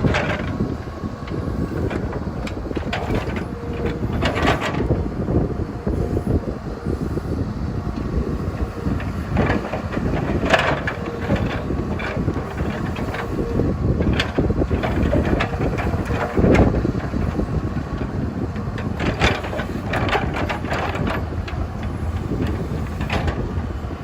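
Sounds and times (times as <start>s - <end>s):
metal clanks and knocks: 0.0s - 0.6s, 1.8s - 4.9s, 9.1s - 13.3s, 18.8s - 23.5s
excavator diesel engine running: 0.0s - 24.0s.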